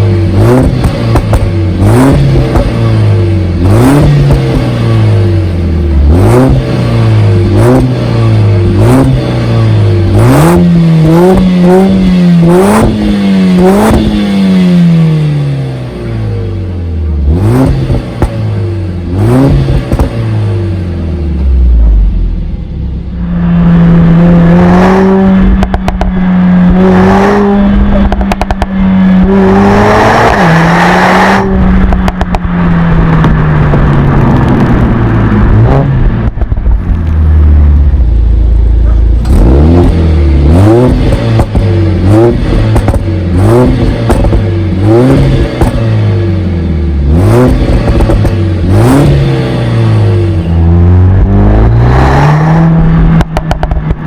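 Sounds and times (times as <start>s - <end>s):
exhaust pops and crackles: 0.0s - 3.0s, 17.6s - 18.4s, 19.5s - 20.2s, 25.4s - 26.8s, 27.6s - 29.3s, 31.4s - 46.1s, 47.4s - 49.3s, 52.7s - 54.0s
car engine revving: 0.0s - 54.0s.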